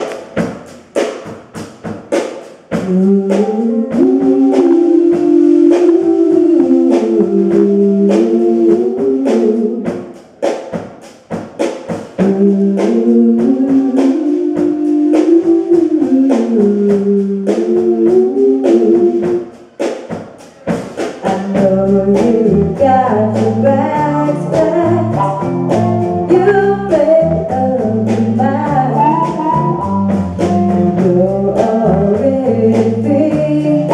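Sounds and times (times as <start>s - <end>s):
person singing blues: 2.7s - 10.1s, 12.2s - 19.5s, 21.2s - 33.9s
bass line: 2.8s - 9.8s, 21.4s - 33.9s.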